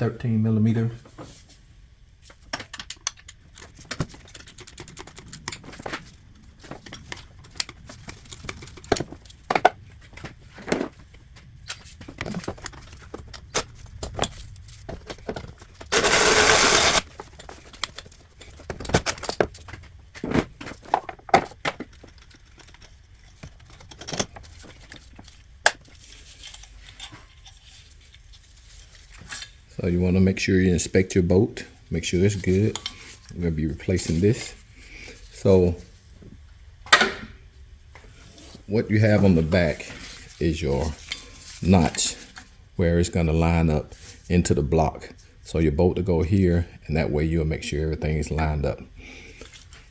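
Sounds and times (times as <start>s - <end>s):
loud steady noise: 15.9s - 17.0s.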